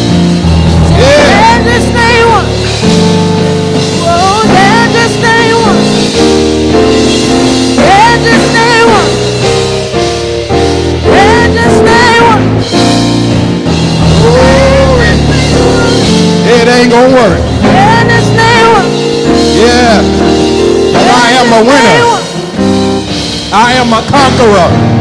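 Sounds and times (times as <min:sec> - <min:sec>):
band playing held chords: 0:00.0 - 0:25.0
person singing: 0:00.9 - 0:02.8, 0:03.9 - 0:06.1, 0:07.8 - 0:09.4, 0:11.0 - 0:12.7, 0:14.1 - 0:20.1, 0:20.9 - 0:22.5.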